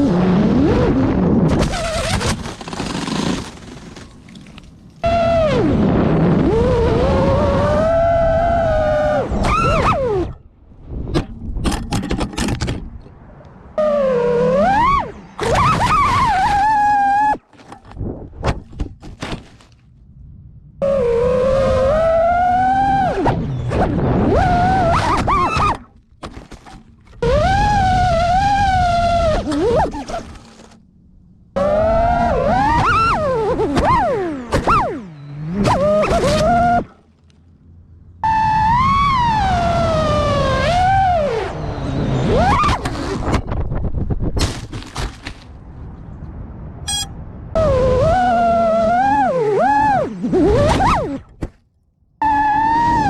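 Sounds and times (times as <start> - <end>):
drone motors whining: 5.0 - 11.3, 13.3 - 17.5, 20.8 - 26.0, 26.9 - 30.8, 31.4 - 43.6, 46.9 - 51.5, 52.2 - 53.0.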